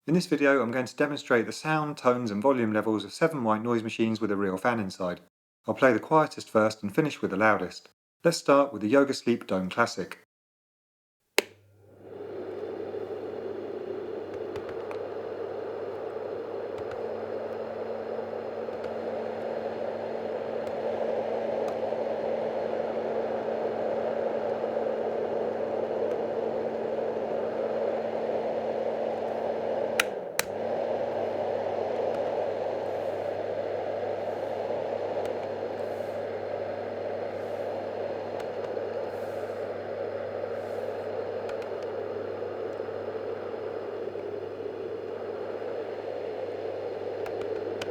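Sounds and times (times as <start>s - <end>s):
low motor hum: 11.8s - 47.9s
white noise machine fan rushing: 11.8s - 47.9s
sharp clicks: 29.9s - 30.6s, 40.4s - 42.0s, 47.2s - 47.9s.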